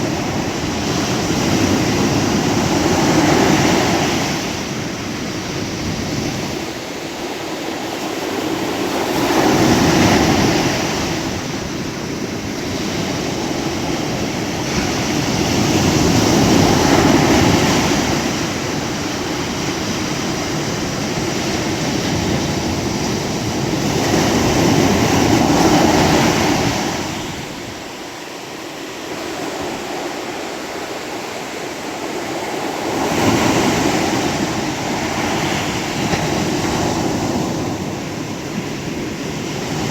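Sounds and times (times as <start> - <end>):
waves breaking and washing in: 0.0 - 39.9.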